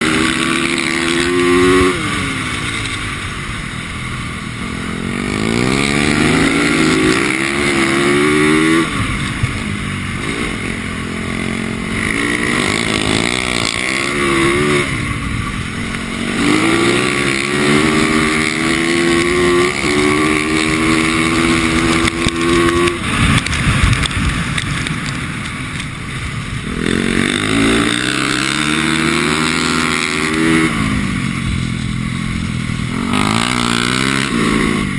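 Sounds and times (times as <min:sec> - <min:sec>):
dirt bike engine revving: 0:00.0 - 0:25.4, 0:26.5 - 0:34.9.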